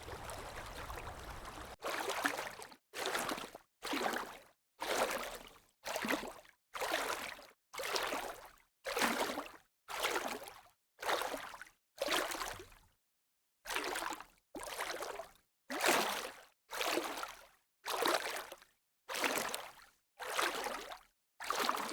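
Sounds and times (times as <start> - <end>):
sea waves in short bursts: 0.0 - 1.8.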